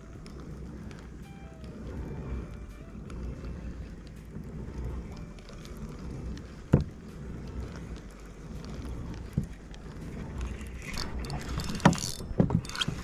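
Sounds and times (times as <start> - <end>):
wind rumble on microphone: 0.0 - 13.0.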